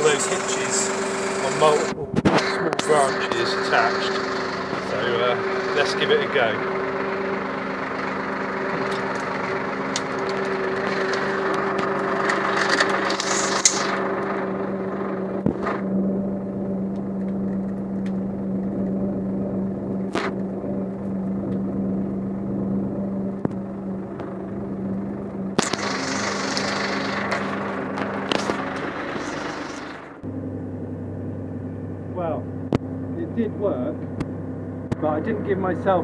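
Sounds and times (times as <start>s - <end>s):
sharp clicks: 0.0s - 14.6s, 25.6s - 30.2s
small tractor engine running: 0.0s - 36.0s.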